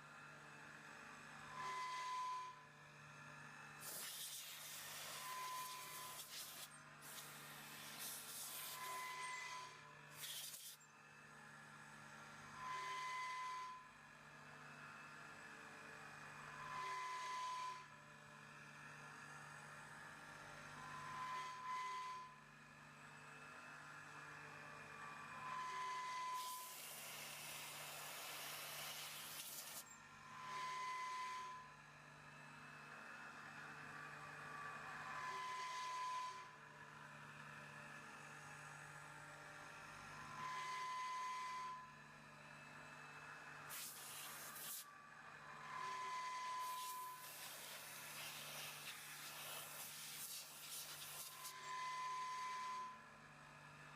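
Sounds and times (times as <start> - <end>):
cutting noise with high tone: 25.5 - 31.6, 43.7 - 44.8, 45.6 - 52.7.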